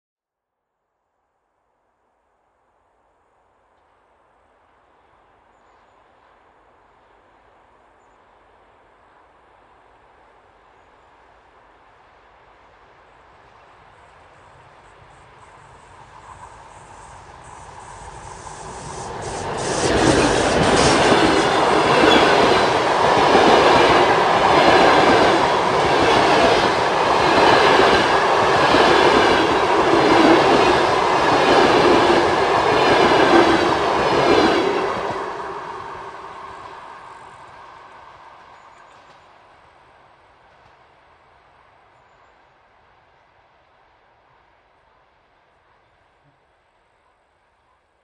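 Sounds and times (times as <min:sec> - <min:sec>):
train wheels clattering on rails: 0:17.6 - 0:39.6.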